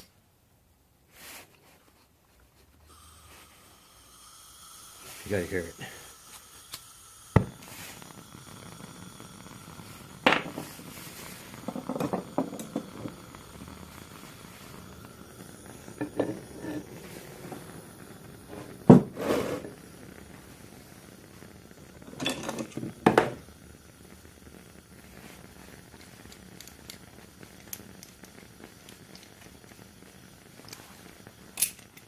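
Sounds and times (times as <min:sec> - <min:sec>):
torch hissing: 0:02.8 - 0:32.0.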